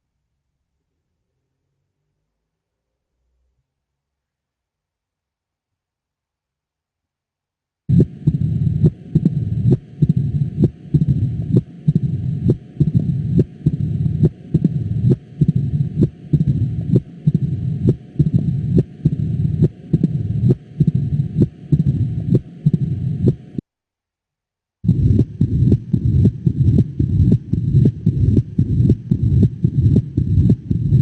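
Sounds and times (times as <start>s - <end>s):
heartbeat through stethoscope: 7.9s - 23.6s, 24.8s - 31.0s
rushing heart murmur: 7.9s - 23.6s, 24.9s - 31.0s.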